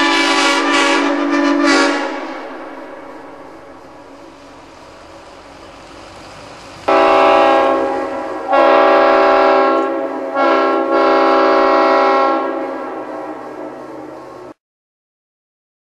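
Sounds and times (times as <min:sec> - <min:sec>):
locomotive air horn blasts: 0:00.0 - 0:04.3, 0:06.9 - 0:14.0.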